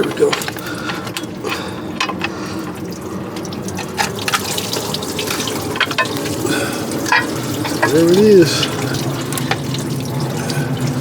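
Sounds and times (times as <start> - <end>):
metal clicks and knocks: 0.0 - 2.9, 3.7 - 6.4, 7.0 - 8.2
coolant splashing: 0.0 - 11.0.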